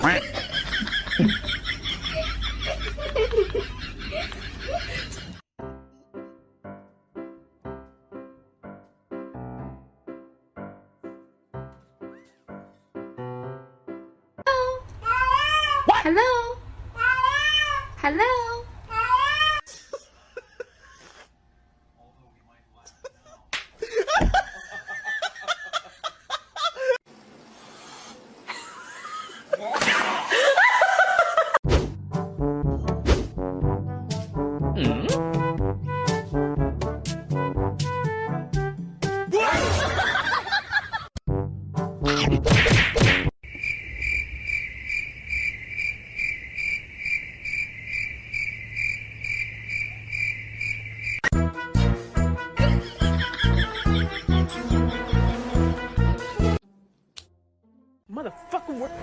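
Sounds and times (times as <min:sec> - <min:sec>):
person snickering and laughing: 0:00.1 - 0:05.4, 0:19.7 - 0:21.3, 0:28.5 - 0:29.7, 0:52.6 - 0:55.6
cricket chirping: 0:43.4 - 0:51.3.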